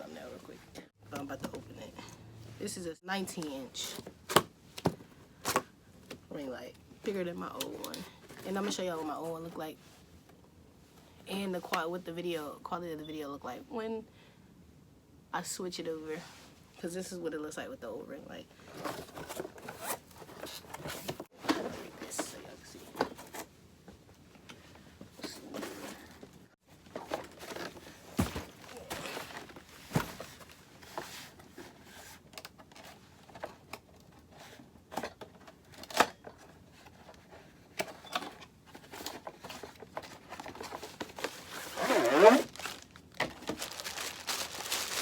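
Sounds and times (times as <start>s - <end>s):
packaging crinkling: 40.6s - 45.0s.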